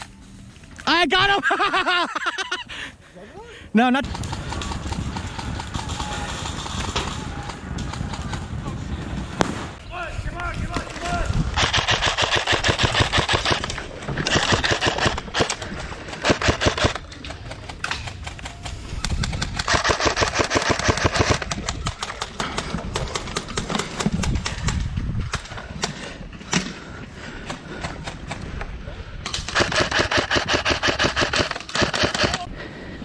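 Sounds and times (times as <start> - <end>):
airsoft guns firing: 10.7 - 24.2, 29.3 - 32.5.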